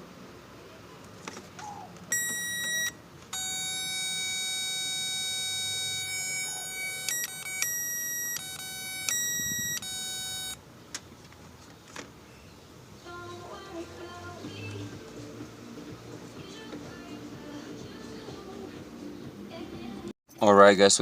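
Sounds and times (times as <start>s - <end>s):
alternating two-pitch beeps: 2.1s - 10.6s
long steady electronic beep: 2.1s - 10.6s.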